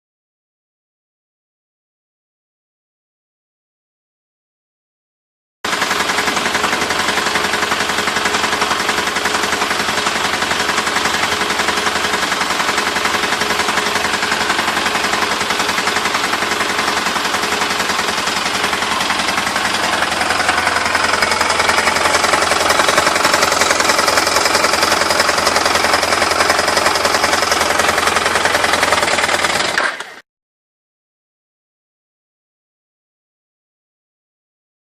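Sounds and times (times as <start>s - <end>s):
motorcycle engine rattling: 5.7s - 30.2s.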